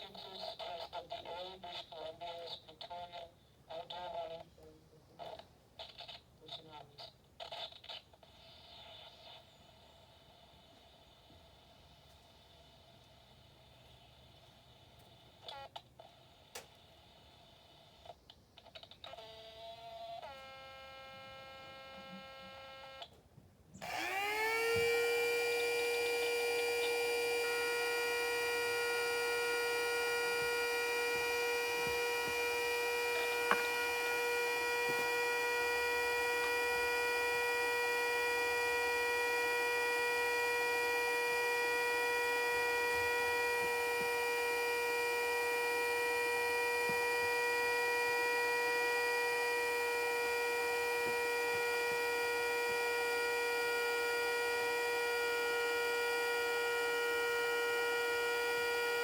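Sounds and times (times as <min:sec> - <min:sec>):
siren steady alert tone: 0:23.8 - 0:59.0.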